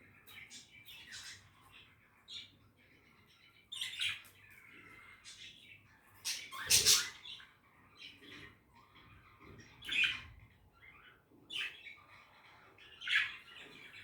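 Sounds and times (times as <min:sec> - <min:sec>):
budgerigars chirping: 0:06.2 - 0:14.0.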